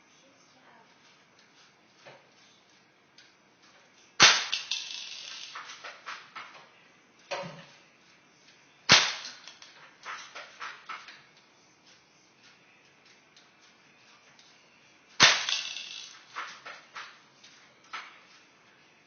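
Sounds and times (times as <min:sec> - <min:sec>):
airsoft rifle shot: 0:04.2 - 0:05.6, 0:08.9 - 0:09.6, 0:15.2 - 0:16.5.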